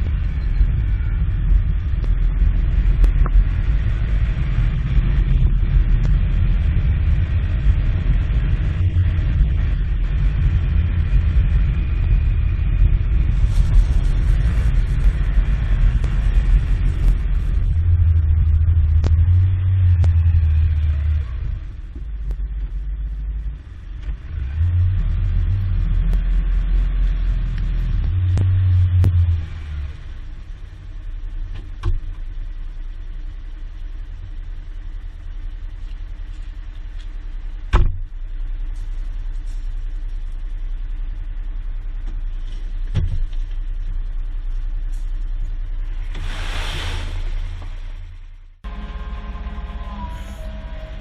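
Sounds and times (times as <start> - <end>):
engine low rumble: 0.0 - 51.0
short hiss: 46.2 - 47.8.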